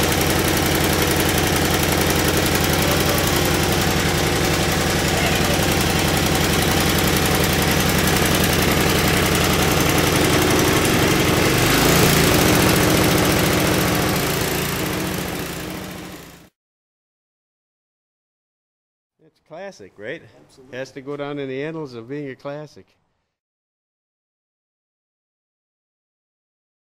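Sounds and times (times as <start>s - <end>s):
small gasoline engine running: 0.0s - 16.5s.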